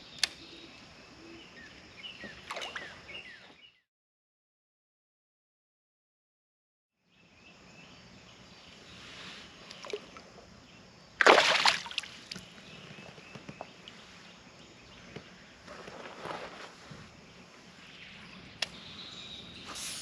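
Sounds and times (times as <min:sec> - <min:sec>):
loud splash: 0:11.2 - 0:12.1.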